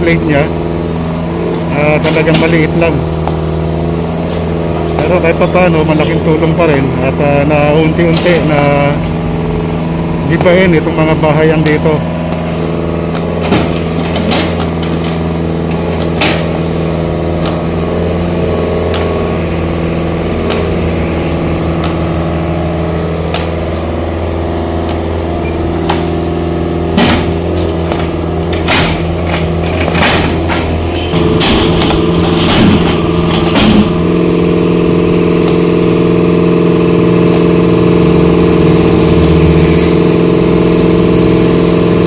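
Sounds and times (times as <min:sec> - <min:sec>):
diesel engine running: 0:00.0 - 0:42.0
concrete breaking knocks: 0:26.9 - 0:34.0.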